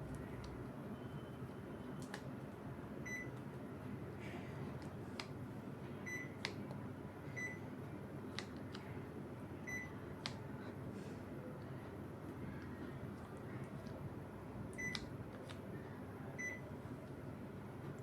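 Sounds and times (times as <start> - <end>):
air conditioner beeps: 0.2 - 2.3, 2.9 - 3.4, 5.8 - 8.0, 9.6 - 10.2, 14.7 - 15.2, 16.2 - 16.8.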